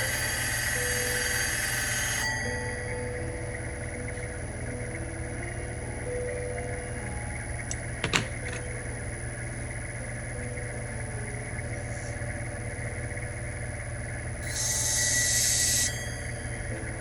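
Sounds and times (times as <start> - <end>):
high-pitched hiss: 0.0 - 4.4, 14.4 - 17.0
sharpening machine motor humming: 0.0 - 17.0.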